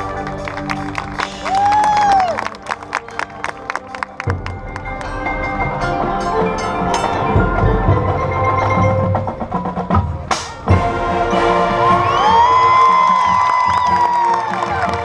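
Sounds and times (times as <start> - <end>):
drums: 0.0 - 2.7, 4.1 - 15.0
marching band playing: 0.0 - 15.0
marimba and bells: 4.2 - 10.2.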